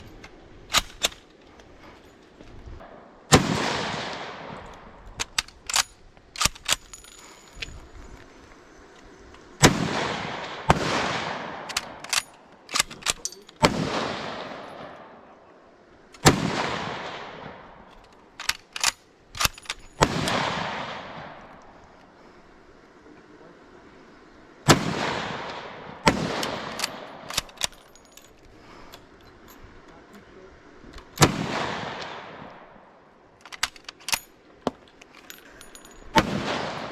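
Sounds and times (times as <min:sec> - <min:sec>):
rifle shots with rolling echo: 0:02.8 - 0:06.8, 0:09.6 - 0:15.6, 0:16.2 - 0:21.8, 0:24.6 - 0:28.1, 0:31.1 - 0:34.4, 0:35.5 - 0:36.9
rifle bolt clicking: 0:04.7 - 0:06.9, 0:11.6 - 0:13.6, 0:17.9 - 0:19.9, 0:26.4 - 0:28.4.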